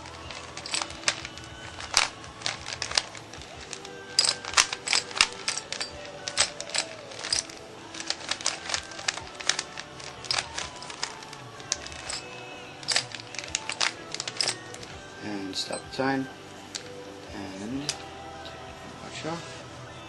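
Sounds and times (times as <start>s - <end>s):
puzzle cube clicking: 0.0s - 14.8s
faint music: 0.0s - 20.0s.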